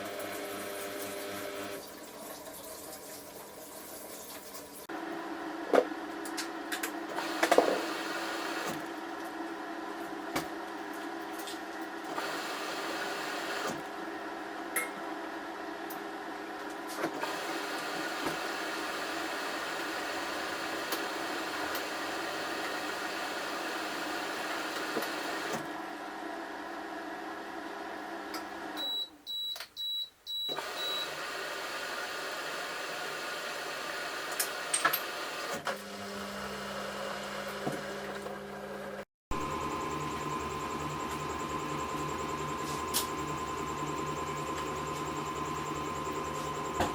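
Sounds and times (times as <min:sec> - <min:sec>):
washing machine short high beeps: 0:28.8 - 0:31.2
steady mechanical hum: 0:36.7 - 0:46.9.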